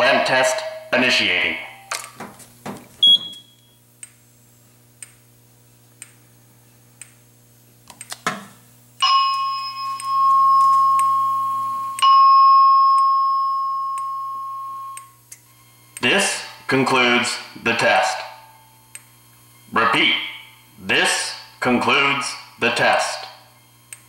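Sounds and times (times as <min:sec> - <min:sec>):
low electrical hum: 0:00.0 - 0:24.0
fire alarm chime ringing: 0:01.5 - 0:02.0, 0:03.0 - 0:03.8, 0:09.0 - 0:15.0.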